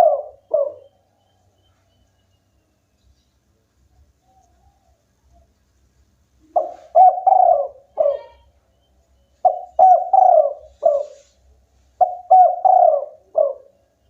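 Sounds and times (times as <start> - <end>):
dove cooing: 0.0 - 1.2, 6.4 - 8.5, 9.4 - 11.4, 12.0 - 14.0.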